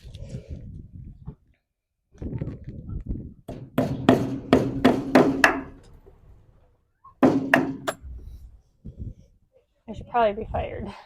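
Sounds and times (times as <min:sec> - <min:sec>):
hammer striking fastener: 0:07.2 - 0:08.0.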